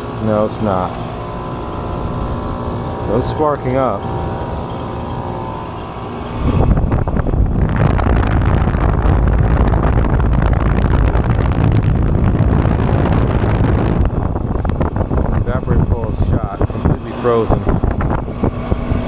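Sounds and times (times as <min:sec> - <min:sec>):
igniter sparking: 0:00.0 - 0:07.4
furnace burners roaring: 0:00.0 - 0:19.0.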